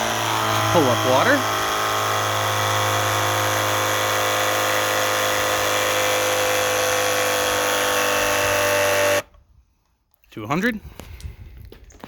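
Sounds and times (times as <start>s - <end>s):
electric water pump running: 0.0s - 9.3s.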